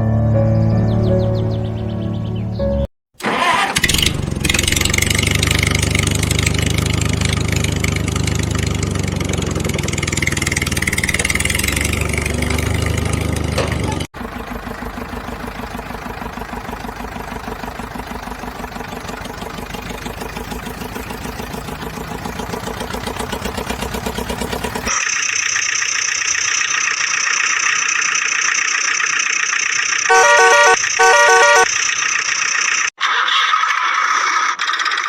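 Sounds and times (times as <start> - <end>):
pulsing engine sound effect: 3.8 - 32.9
electronic beeping: 30.1 - 31.7.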